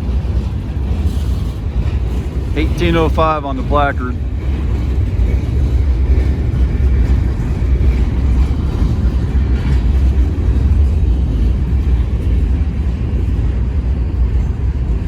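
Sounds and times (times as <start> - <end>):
freight train rumbling past: 0.0 - 15.0.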